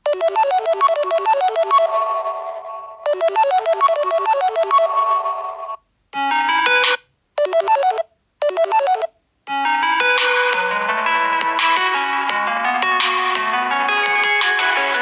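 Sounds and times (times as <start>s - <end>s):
fuller ringtone: 0.0s - 11.4s
bell-like ringtone melody: 0.1s - 6.8s, 7.4s - 10.2s.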